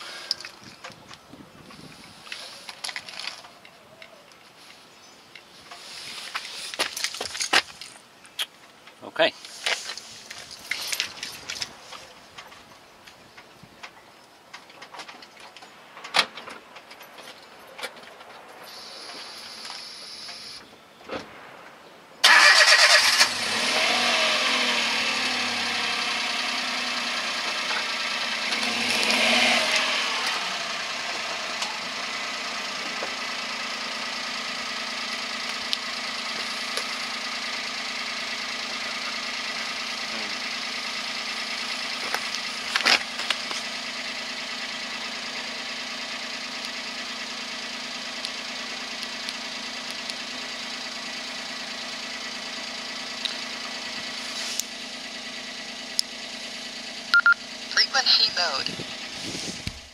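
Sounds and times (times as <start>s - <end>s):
car engine starting and revving: 22.2s - 59.9s.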